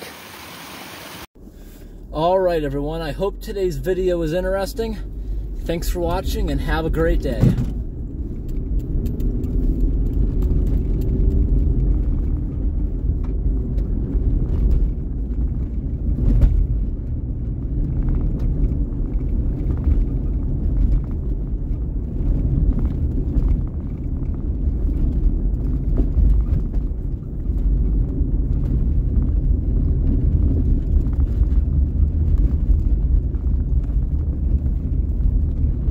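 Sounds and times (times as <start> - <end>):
water rushing through pipe: 0.0 - 1.3.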